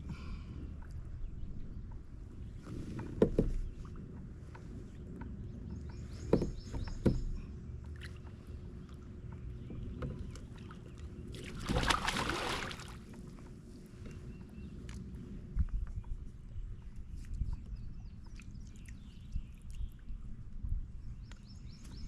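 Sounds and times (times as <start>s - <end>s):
low steady rumble: 0.0s - 22.0s.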